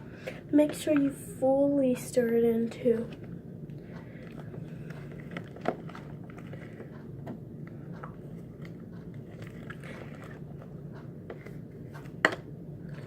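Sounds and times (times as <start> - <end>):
slime squelching: 4.0 - 7.0, 8.0 - 13.0.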